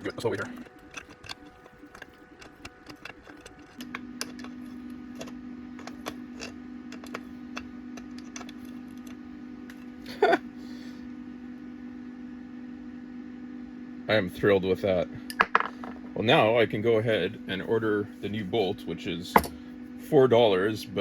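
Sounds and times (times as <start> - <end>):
steady low hum: 0.0 - 21.0
small metallic clicks: 0.6 - 9.9.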